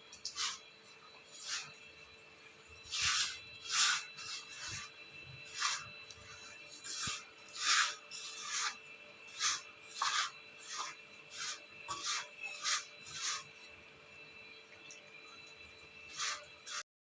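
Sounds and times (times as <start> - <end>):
hands kneading dough: 2.9 - 13.6.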